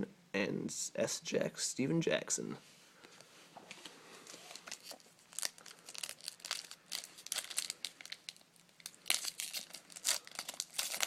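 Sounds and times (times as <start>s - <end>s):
foil wrapper crinkling: 4.5s - 11.0s.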